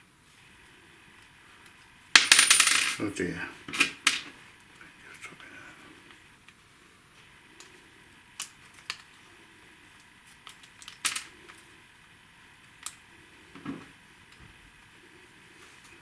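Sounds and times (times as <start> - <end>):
wooden pieces clicking and tapping: 3.7 - 4.4, 8.4 - 9.1, 10.0 - 11.7.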